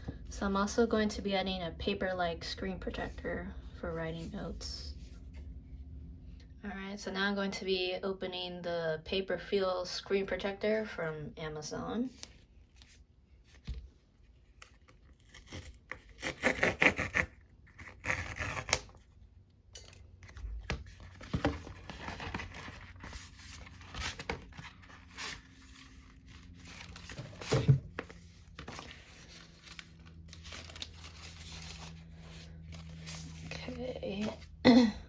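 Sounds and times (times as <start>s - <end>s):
crinkling and rustling: 19.7s - 34.5s
packaging ripping: 28.8s - 32.2s.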